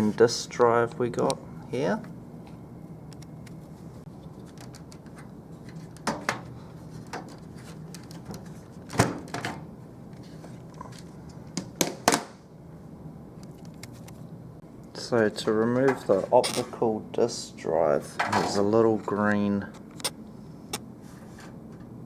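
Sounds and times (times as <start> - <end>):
low steady hum: 0.0 - 22.0
computer casing clicks and knocks: 4.4 - 9.6.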